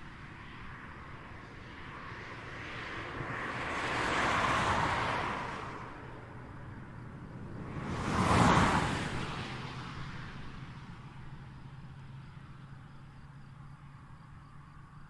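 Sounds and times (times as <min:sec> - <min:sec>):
distant traffic hum: 0:00.0 - 0:15.0
vehicle passing: 0:03.0 - 0:11.5.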